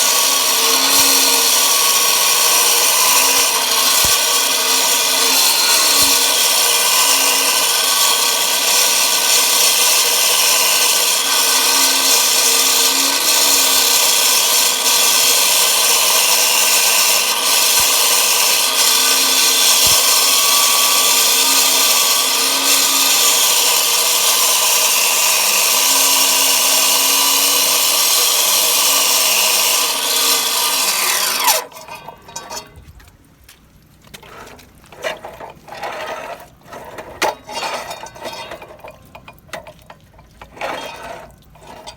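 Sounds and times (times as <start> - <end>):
saw spinning down whine: 0.0 - 31.6
concrete cutting saw grinding: 0.0 - 32.8, 34.1 - 39.7, 40.4 - 41.9.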